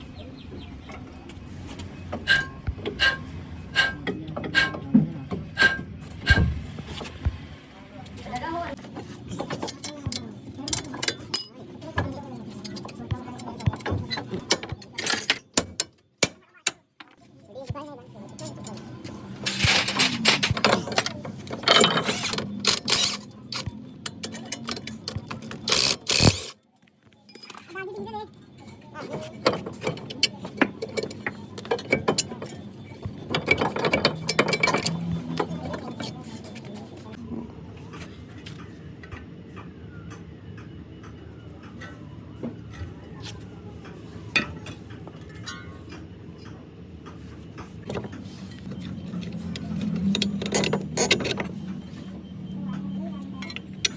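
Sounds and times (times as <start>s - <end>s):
metal tool clanks and scrapes: 2.2s - 4.9s, 5.5s - 6.5s, 9.0s - 17.2s, 18.3s - 26.6s, 27.3s - 27.8s, 29.0s - 37.1s, 47.8s - 52.0s, 53.4s - 53.9s
ratchet clicks: 21.7s - 26.6s.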